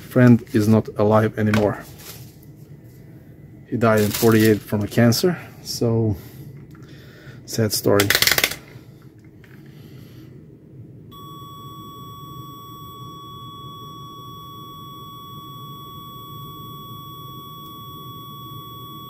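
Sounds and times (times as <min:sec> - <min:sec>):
multimeter continuity beep: 0:11.1 - 0:19.0.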